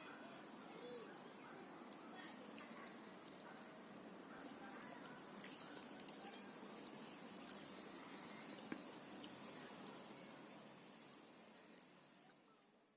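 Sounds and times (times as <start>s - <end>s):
small clicks and ticks: 4.5s - 10.0s, 11.0s - 12.0s.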